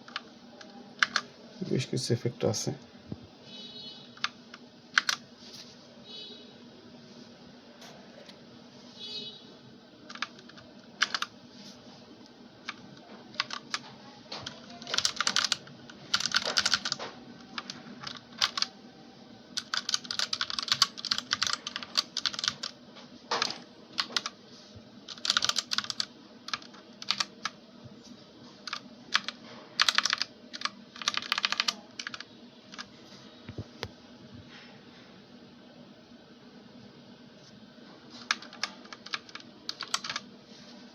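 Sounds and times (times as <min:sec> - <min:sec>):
mechanical keyboard keystrokes: 0:01.0 - 0:01.2, 0:05.0 - 0:05.2, 0:10.1 - 0:11.3, 0:12.7 - 0:18.7, 0:19.6 - 0:22.7, 0:23.3 - 0:24.3, 0:25.1 - 0:27.5, 0:28.6 - 0:32.9, 0:38.2 - 0:40.2.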